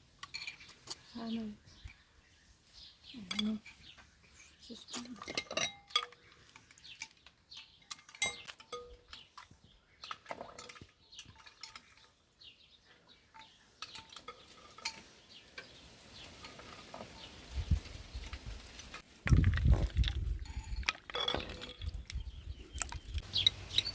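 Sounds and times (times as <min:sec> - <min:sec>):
cutlery and dishes clinking: 0:04.9 - 0:12.0, 0:20.5 - 0:21.9.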